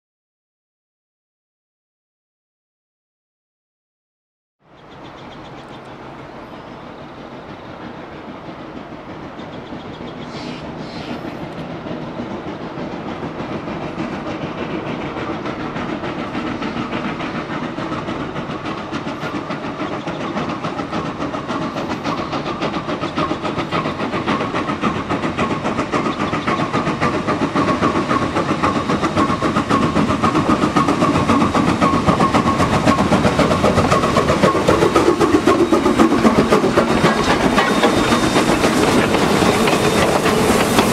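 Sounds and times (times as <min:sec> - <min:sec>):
steam locomotive exhaust: 0:04.7 - 0:40.9
train wheels clattering: 0:04.7 - 0:40.9.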